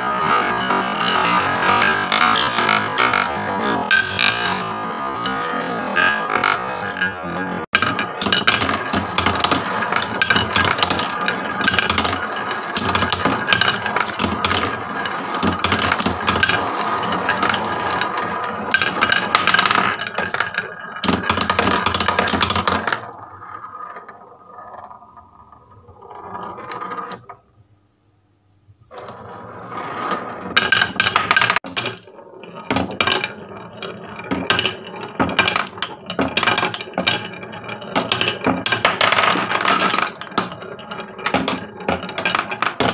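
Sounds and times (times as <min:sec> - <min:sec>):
marbles clattering down wooden run: 0:00.1 - 0:27.3, 0:30.0 - 0:42.9.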